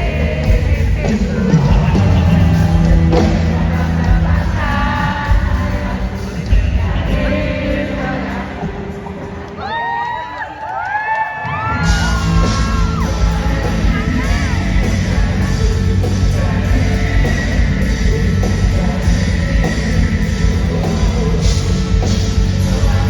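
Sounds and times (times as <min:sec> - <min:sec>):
live rock band playing: 0:00.0 - 0:09.7, 0:11.6 - 0:23.0
person singing: 0:11.6 - 0:23.0.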